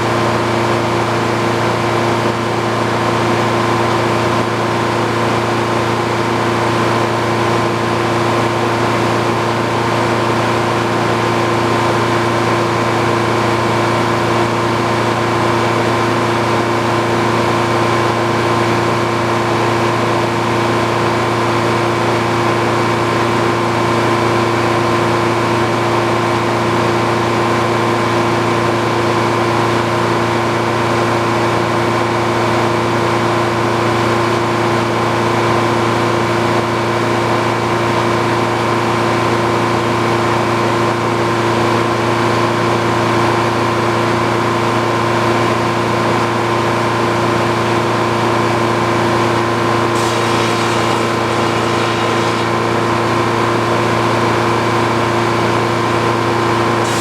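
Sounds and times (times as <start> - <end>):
sawmill machine hum: 47.8 - 57.0
brief hiss: 50.0 - 52.8.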